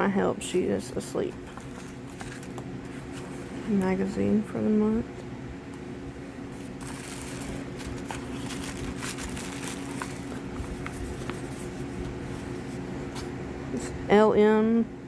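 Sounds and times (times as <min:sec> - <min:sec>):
low background hum: 0:00.0 - 0:15.0
packaging rustling and crinkling: 0:01.3 - 0:03.6, 0:06.6 - 0:12.9.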